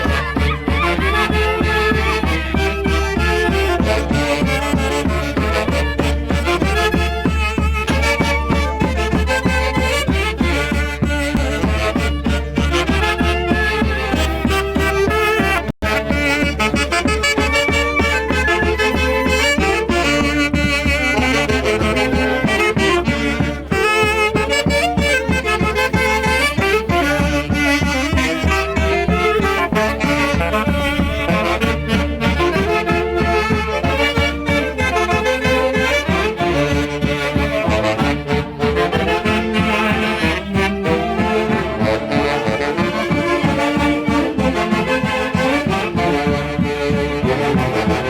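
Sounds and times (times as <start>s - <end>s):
saxophones and wind instruments playing: 0.0s - 48.0s.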